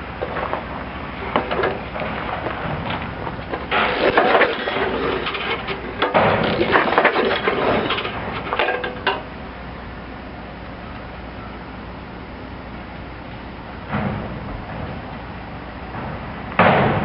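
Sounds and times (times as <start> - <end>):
recoil starter rope pull whir: 3.7 - 8.2.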